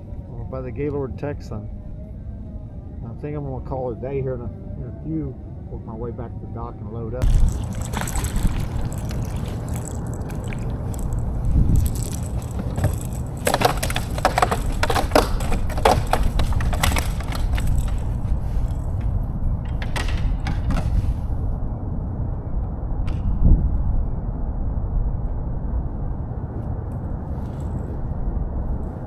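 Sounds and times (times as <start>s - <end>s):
gear handling clicks and knocks: 7.2s - 20.8s
wind buffeting microphone: 7.2s - 29.0s.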